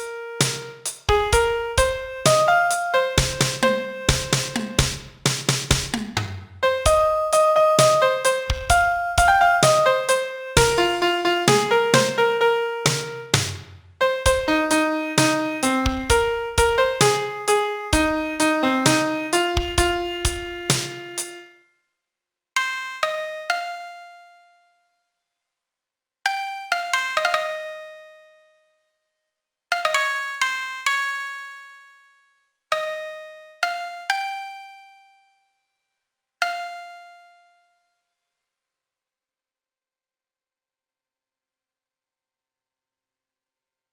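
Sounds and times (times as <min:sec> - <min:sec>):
piano melody over bass: 0:00.0 - 0:05.0, 0:06.6 - 0:21.5.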